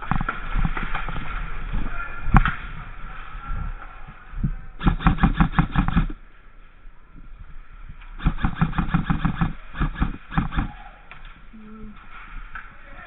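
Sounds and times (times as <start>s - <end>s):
airsoft rifle full-auto bursts: 4.8s - 6.2s, 8.2s - 10.7s.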